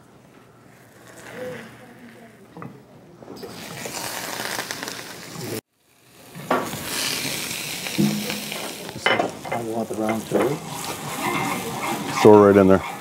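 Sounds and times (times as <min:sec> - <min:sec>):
butter sizzling in a hot pan: 0:03.4 - 0:11.7.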